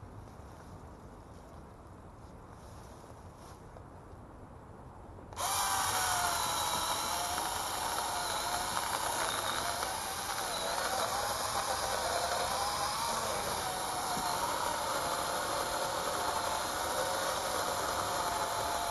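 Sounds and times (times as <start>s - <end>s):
mini chainsaw whining: 5.4s - 18.9s.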